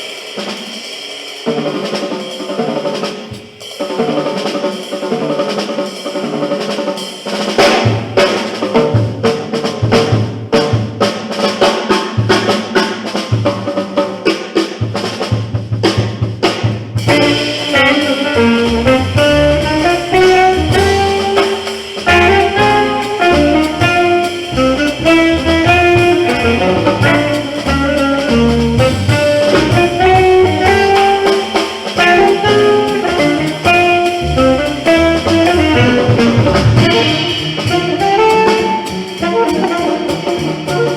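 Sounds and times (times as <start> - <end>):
drum kit: 0.0 - 40.9
horn playing melody: 17.0 - 40.9
walking bass: 17.0 - 40.9.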